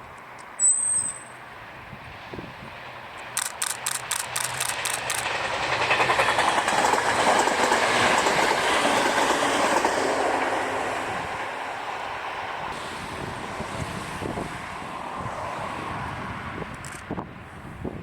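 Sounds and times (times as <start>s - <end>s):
electric train running on rails: 0.0s - 18.0s
sharp clicks of wheels: 3.2s - 8.3s.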